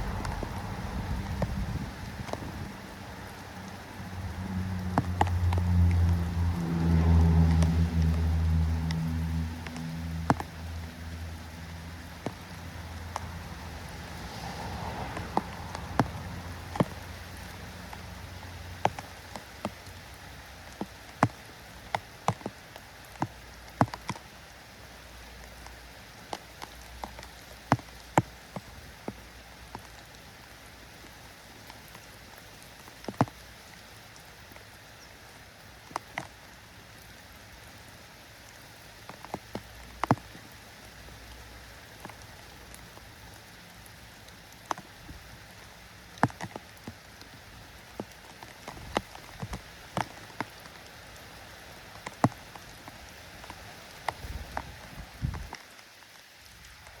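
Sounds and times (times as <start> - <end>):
steady rain hiss: 0.0 - 57.0.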